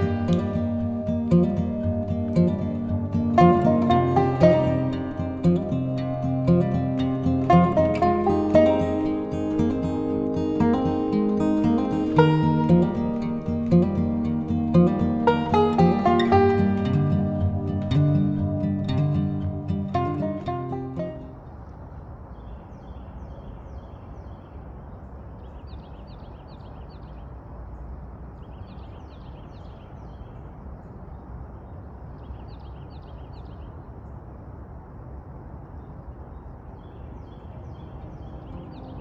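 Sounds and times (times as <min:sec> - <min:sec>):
birds chirping: 0:00.0 - 0:21.3.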